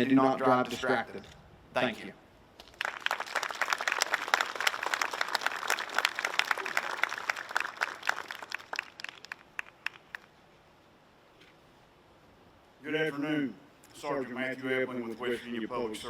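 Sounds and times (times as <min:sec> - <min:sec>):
audience applauding: 0:02.6 - 0:10.3.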